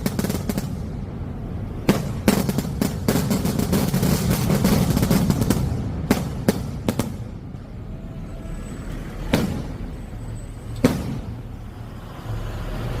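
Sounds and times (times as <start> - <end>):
loud firework bangs: 0.0 - 1.0, 1.8 - 7.4, 9.3 - 9.9, 10.8 - 11.5
steady low rumble: 0.0 - 12.0.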